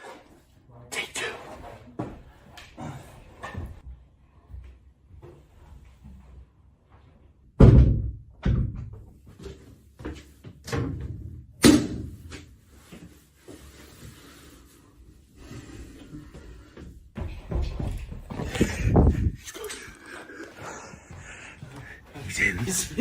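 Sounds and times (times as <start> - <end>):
knocks and thuds: 7.6 - 9.0.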